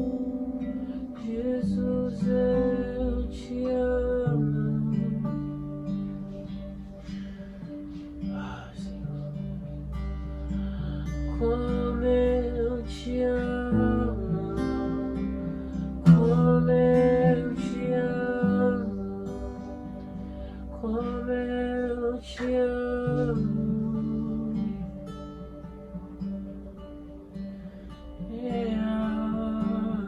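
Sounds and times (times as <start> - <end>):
person singing: 0.0 - 6.4, 10.4 - 25.6, 28.2 - 30.0
acoustic guitar chords: 0.0 - 30.0.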